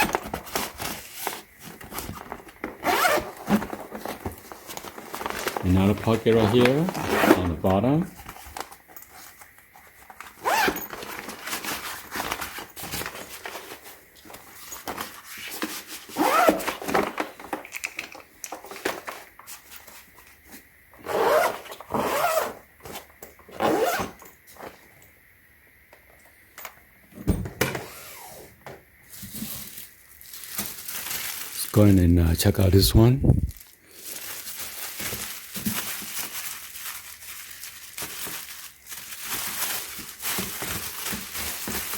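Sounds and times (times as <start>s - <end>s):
rustling and handling: 0.0s - 25.2s, 28.9s - 41.9s
suitcase zipper rasping: 2.8s - 3.3s, 6.9s - 7.6s, 16.2s - 16.7s, 21.0s - 22.6s, 23.6s - 24.2s.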